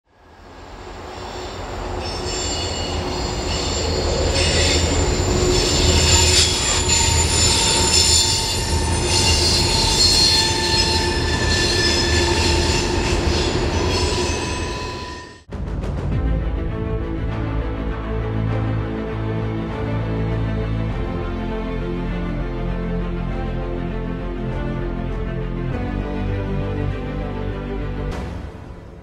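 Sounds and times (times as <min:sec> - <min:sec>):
low train rumble: 0:00.1 - 0:29.0
train wheels squealing on rail: 0:00.2 - 0:15.5.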